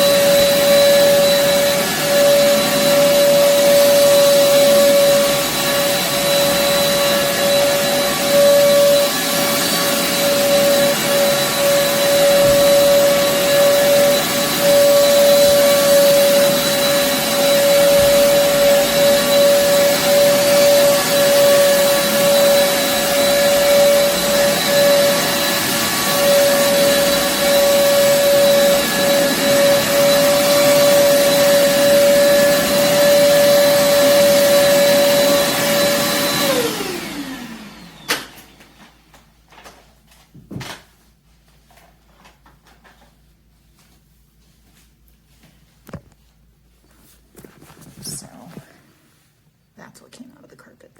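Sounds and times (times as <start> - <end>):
vacuum cleaner running on carpet: 0.0 - 39.0.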